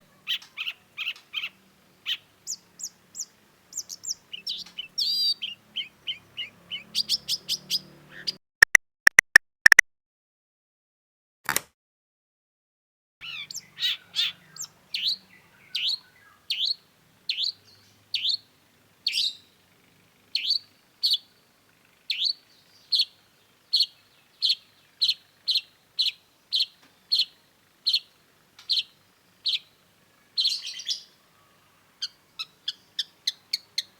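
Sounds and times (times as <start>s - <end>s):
bird singing chirps and trills: 0.0s - 8.4s, 13.2s - 33.9s
sharp downward bird calls: 0.0s - 8.4s, 13.2s - 33.9s
loud sharp clicks: 11.5s - 11.7s.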